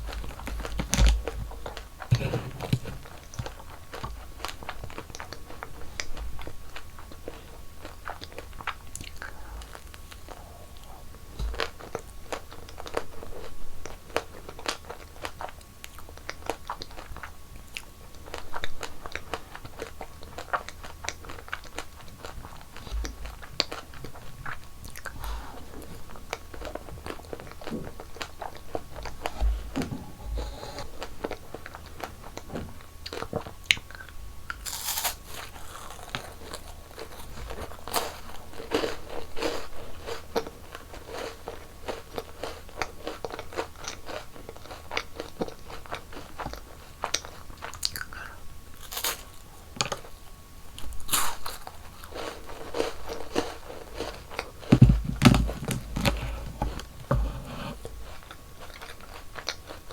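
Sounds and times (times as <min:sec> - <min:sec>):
person chewing sweets: 0:00.0 - 0:59.9
heavy low thuds: 0:29.3 - 0:30.8, 0:54.7 - 0:58.1.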